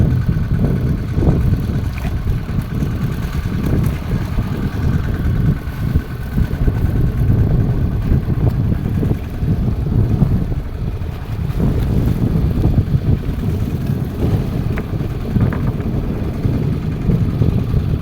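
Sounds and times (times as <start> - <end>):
boat engine droning: 0.0 - 18.0.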